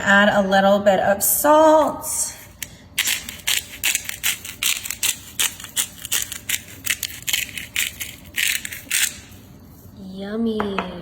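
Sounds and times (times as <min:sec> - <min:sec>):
salt dispenser scratchy strokes: 0:02.4 - 0:09.9.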